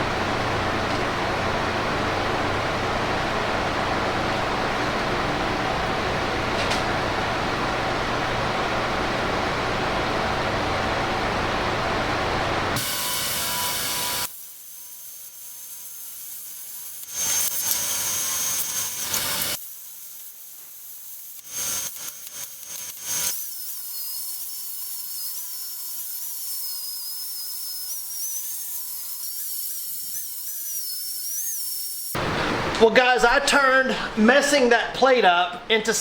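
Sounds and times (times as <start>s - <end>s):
power tool on steel: 12.8s - 32.4s.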